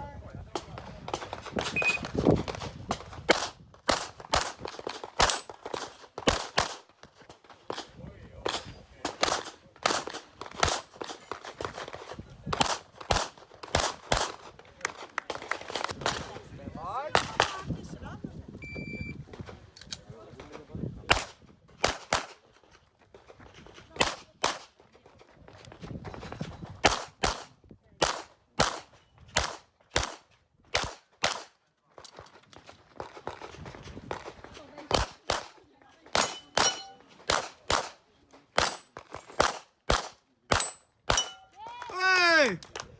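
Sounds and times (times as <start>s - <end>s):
pistol shots: 8.5s - 11.8s, 26.8s - 31.5s, 36.1s - 38.0s, 38.6s - 41.4s
handgun shots with echo: 36.1s - 38.0s, 38.6s - 41.4s.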